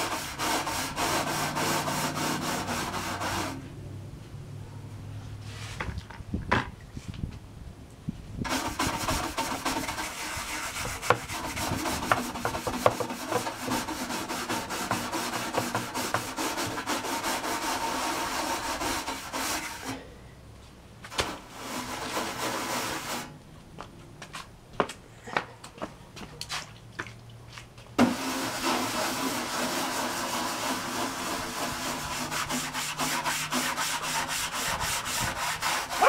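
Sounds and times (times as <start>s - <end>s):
scratchy scrubbing: 0.0s - 3.6s, 8.5s - 20.0s, 21.2s - 23.3s, 28.2s - 36.0s.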